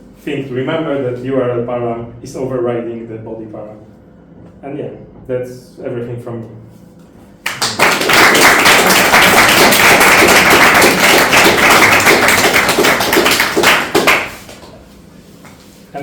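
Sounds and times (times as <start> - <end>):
audience applauding: 7.4 - 14.8.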